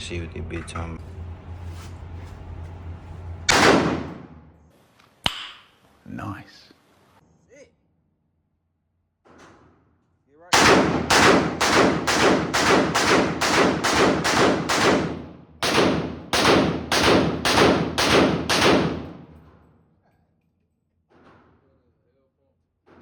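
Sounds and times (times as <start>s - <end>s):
pistol shots with ringing tail: 3.5s - 4.4s, 10.5s - 19.7s.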